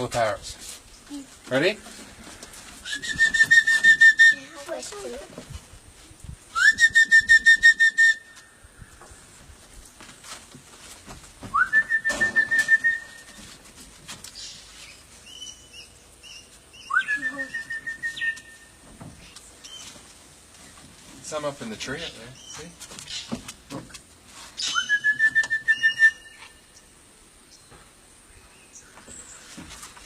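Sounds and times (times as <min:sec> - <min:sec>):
person whistling calls: 0:02.8 - 0:04.6, 0:06.5 - 0:08.4, 0:11.5 - 0:13.4, 0:16.8 - 0:18.7, 0:24.6 - 0:26.5.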